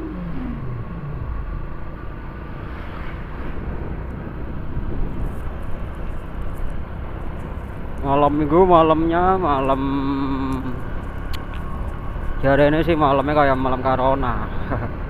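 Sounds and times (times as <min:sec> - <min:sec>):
wind noise: 0:00.0 - 0:09.8
motorcycle engine running: 0:00.0 - 0:14.8
road rumble: 0:00.0 - 0:15.0.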